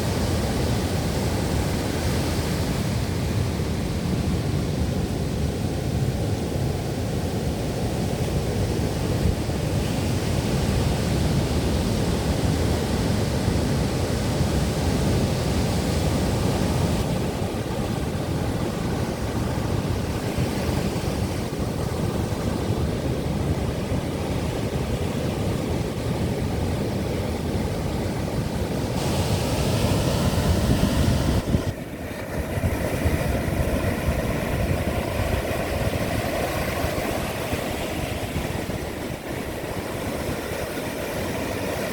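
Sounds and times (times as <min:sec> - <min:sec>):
wind rumble on microphone: 0:00.0 - 0:41.9
surf breaking on shore: 0:15.8 - 0:41.9.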